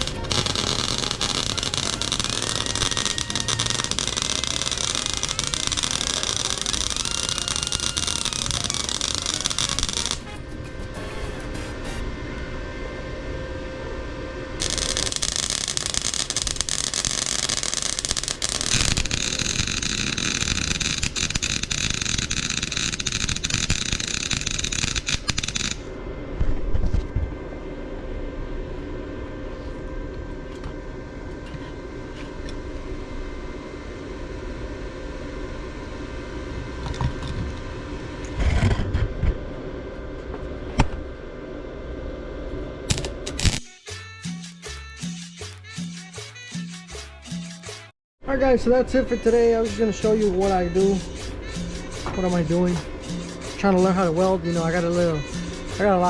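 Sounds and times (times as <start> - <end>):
welding arc hissing: 0.0 - 12.5, 14.6 - 25.9, 42.9 - 47.9
welding machine hum: 0.0 - 12.6, 14.6 - 26.0, 42.6 - 43.7.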